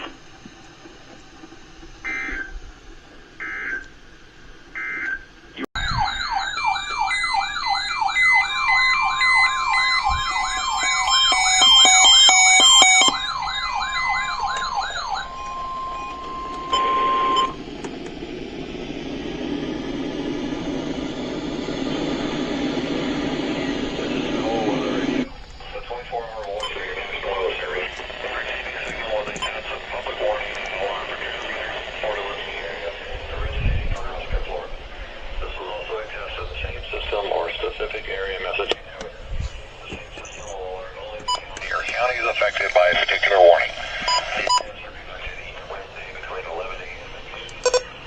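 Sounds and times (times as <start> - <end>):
beeping tones: 5.8 - 17.6, 41.2 - 44.7, 47.6 - 48.0
digital data bursts: 5.8 - 17.6, 41.3 - 48.0
warbling electronic alarm: 5.8 - 33.0, 41.3 - 48.0.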